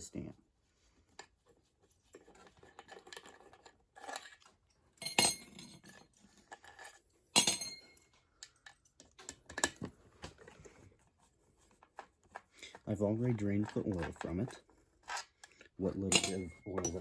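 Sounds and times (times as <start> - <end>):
metal tools clanking and clinking: 16.0 - 17.0.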